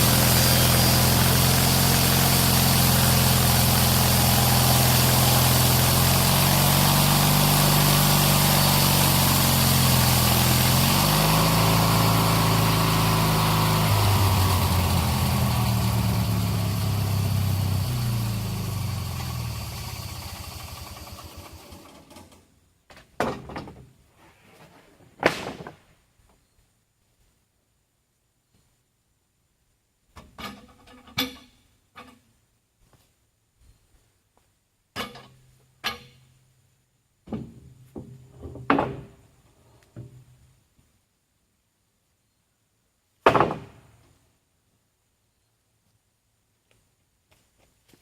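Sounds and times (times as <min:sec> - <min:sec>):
small engine running: 0:00.0 - 0:22.4.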